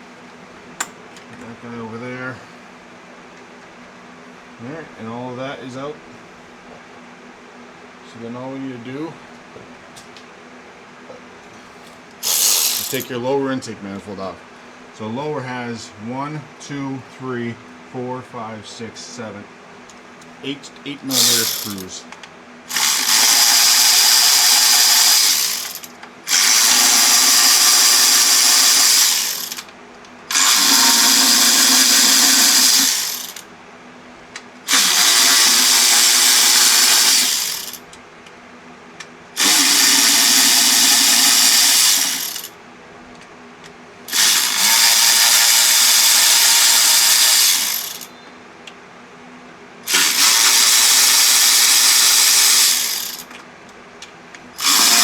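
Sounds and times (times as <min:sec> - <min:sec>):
power tool running: 0:12.2 - 0:13.1, 0:21.1 - 0:22.0, 0:22.7 - 0:29.7, 0:30.3 - 0:33.4, 0:34.7 - 0:37.8, 0:39.4 - 0:42.5, 0:44.1 - 0:48.1, 0:49.9 - 0:53.3, 0:54.6 - 0:55.0.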